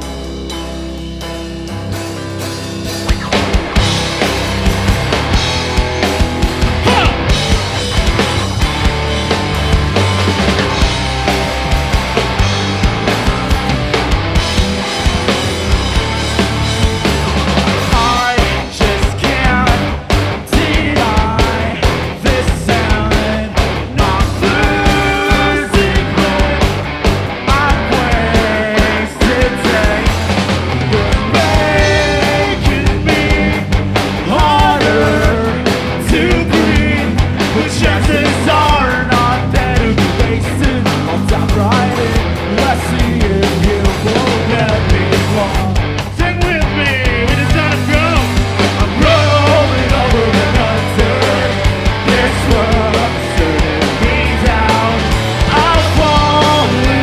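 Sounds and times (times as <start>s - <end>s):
guitar: 0.0s - 57.0s
steady drums: 0.0s - 57.0s
person singing lead vocal: 6.7s - 7.6s, 17.7s - 57.0s.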